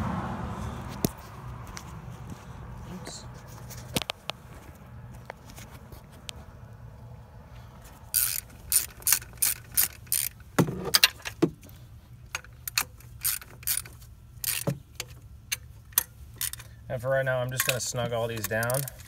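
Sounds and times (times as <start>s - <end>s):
ratchet wrench clicking: 8.1s - 11.2s, 12.3s - 16.8s, 17.5s - 19.0s.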